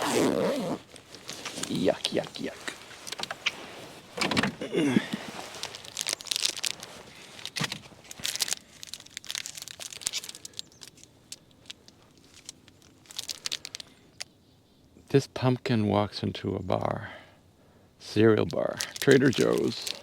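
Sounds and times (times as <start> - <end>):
plastic wrapper crinkling and tearing: 5.1 - 14.3, 18.4 - 20.0.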